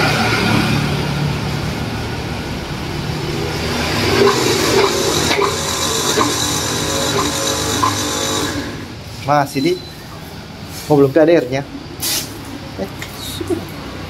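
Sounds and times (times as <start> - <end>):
pressure washer humming: 2.0 - 9.0.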